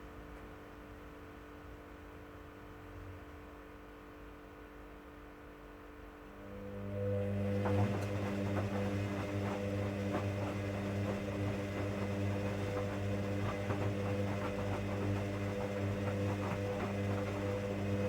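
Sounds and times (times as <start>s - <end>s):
washing machine motor hum: 6.4s - 18.0s.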